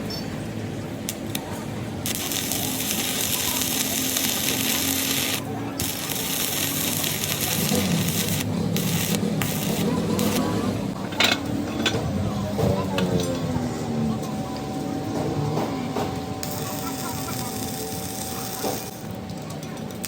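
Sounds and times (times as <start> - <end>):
loud steady hiss: 2.0 - 10.8.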